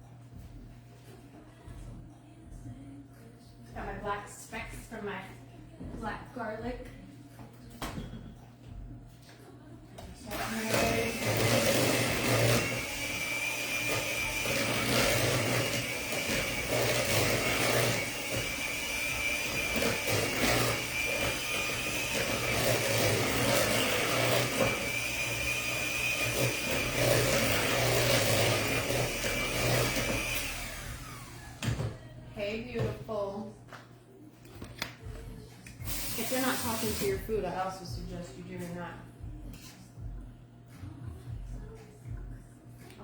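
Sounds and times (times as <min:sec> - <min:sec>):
electric mixer whine: 0:10.2 - 0:32.0.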